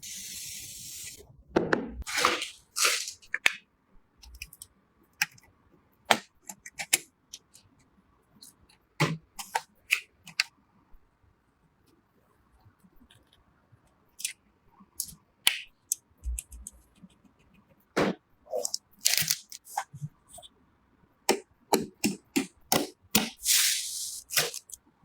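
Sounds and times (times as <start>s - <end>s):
sharp clicks and taps: 16.2s - 17.5s.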